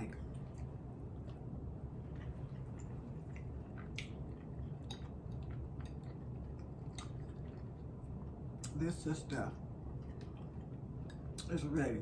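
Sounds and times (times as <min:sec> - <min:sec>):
person chewing food: 0:00.0 - 0:08.8, 0:09.8 - 0:11.5
steady low hum: 0:00.0 - 0:12.0
wet mouth clicks: 0:02.2 - 0:06.2, 0:06.8 - 0:07.7, 0:08.6 - 0:08.8.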